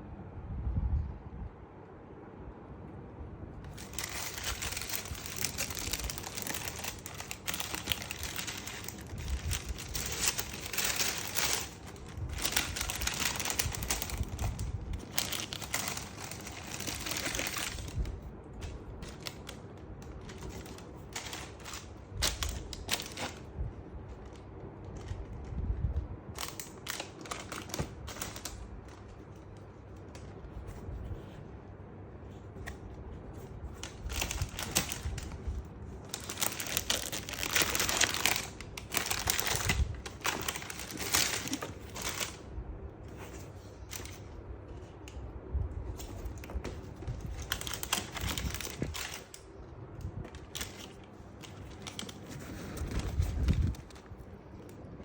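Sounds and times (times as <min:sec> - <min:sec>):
packaging paper crinkling: 0:03.7 - 0:25.5, 0:26.3 - 0:31.3, 0:32.6 - 0:42.5, 0:43.1 - 0:45.1, 0:45.9 - 0:49.6, 0:50.2 - 0:54.6.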